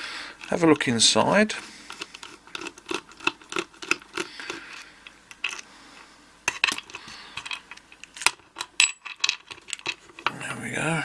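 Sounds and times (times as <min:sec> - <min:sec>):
padlock metallic clicks and taps: 0:01.9 - 0:05.6.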